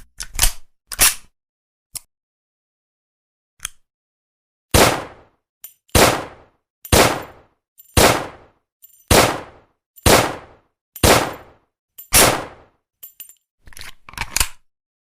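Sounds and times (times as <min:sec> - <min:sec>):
pistol shots: 0:04.8 - 0:05.3, 0:05.9 - 0:08.5, 0:09.1 - 0:12.7.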